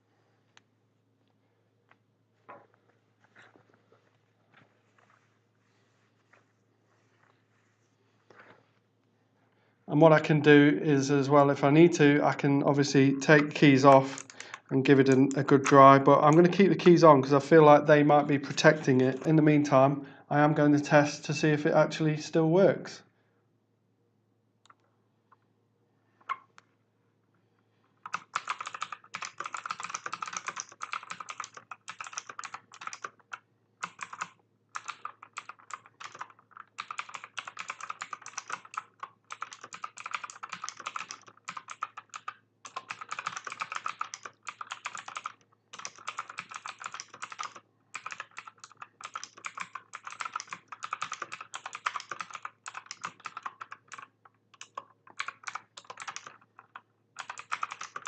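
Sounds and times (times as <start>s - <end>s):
clicky mechanical keyboard typing: 12.9s - 17.0s, 18.1s - 19.4s, 28.0s - 58.0s.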